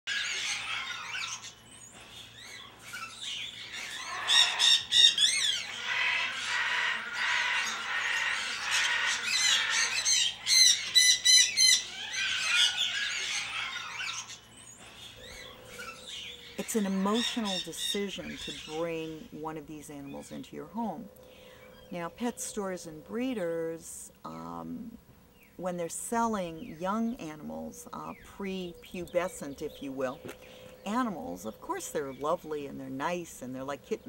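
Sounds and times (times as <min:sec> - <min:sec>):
parrots squawking and chirping: 0:00.1 - 0:19.4.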